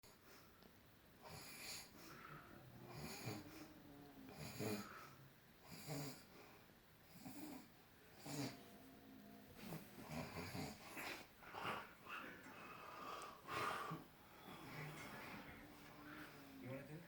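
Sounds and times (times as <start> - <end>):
man snoring: 1.2 - 6.3, 7.1 - 8.7.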